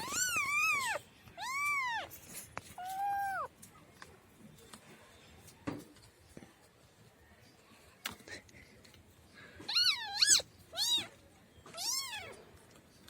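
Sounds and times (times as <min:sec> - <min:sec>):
cat meowing: 0:00.0 - 0:02.1, 0:02.8 - 0:03.5, 0:09.7 - 0:12.4.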